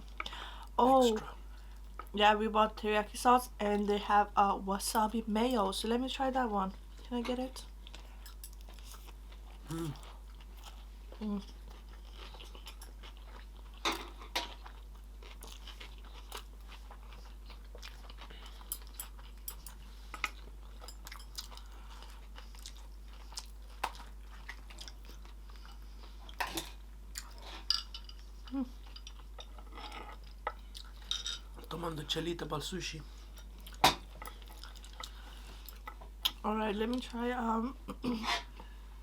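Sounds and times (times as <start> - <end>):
person chewing food: 7.8 - 31.7, 33.1 - 36.4.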